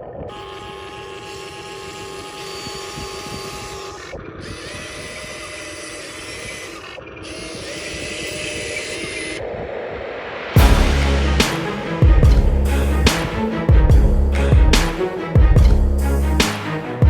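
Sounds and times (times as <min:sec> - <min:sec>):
electric motor whining: 0:00.4 - 0:09.3.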